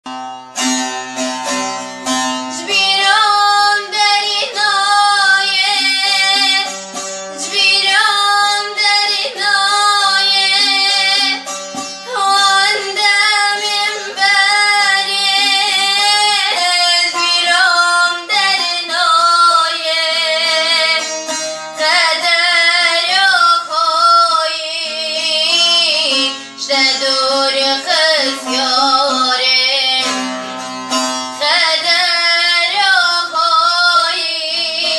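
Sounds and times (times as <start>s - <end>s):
instrumental accompaniment: 0.0s - 34.9s
woman singing: 2.5s - 6.7s, 7.3s - 30.3s, 31.4s - 34.9s.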